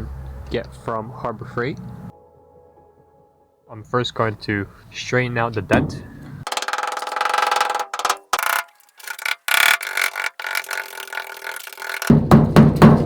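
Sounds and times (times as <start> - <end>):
small power tool whirring: 8.7 - 12.1.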